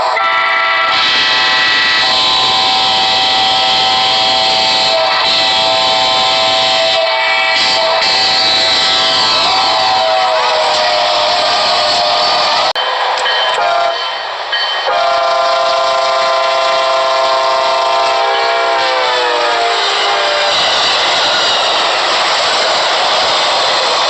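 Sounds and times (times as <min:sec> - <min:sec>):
train air horn: 0:00.0 - 0:12.7, 0:13.6 - 0:14.1, 0:14.9 - 0:20.9
passing train rushing noise: 0:00.0 - 0:24.0.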